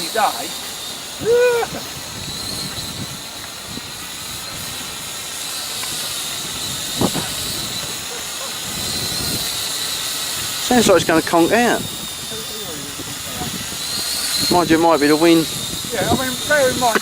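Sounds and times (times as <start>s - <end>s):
drone motors whining: 0.0s - 17.0s
wind hiss on microphone: 0.0s - 17.0s.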